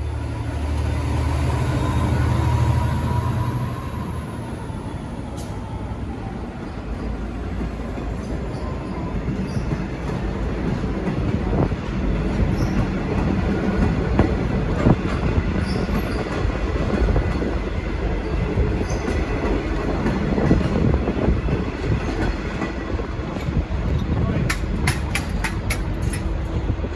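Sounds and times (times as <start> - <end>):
train wheels clacking over rail joints: 18.5 - 26.6.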